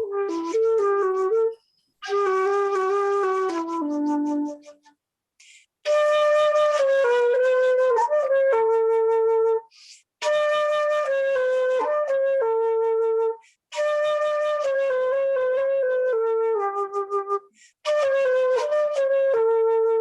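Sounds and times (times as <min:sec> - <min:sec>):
solo flute melody: 0:00.0 - 0:05.0, 0:05.8 - 0:20.0
person breathing in: 0:05.4 - 0:05.8, 0:09.7 - 0:10.2, 0:17.5 - 0:17.8.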